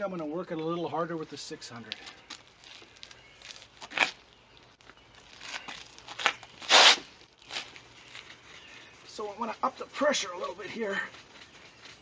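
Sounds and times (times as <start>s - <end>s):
sandpaper rubbing on plastic: 6.6s - 7.1s.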